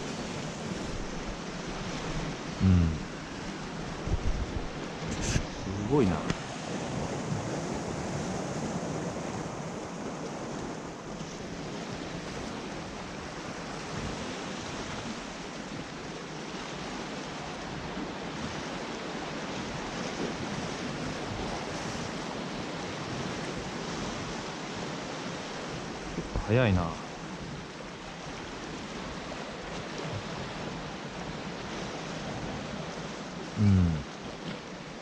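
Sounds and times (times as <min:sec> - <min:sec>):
surf washing against rocky shore: 0:00.0 - 0:16.0
wind on microphone: 0:03.8 - 0:08.0.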